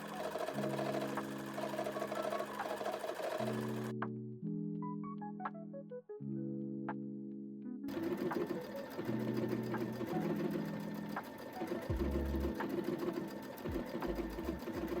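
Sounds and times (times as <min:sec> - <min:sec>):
sewing machine stitching: 0:00.0 - 0:03.9, 0:07.9 - 0:15.0
soft background music: 0:00.0 - 0:15.0.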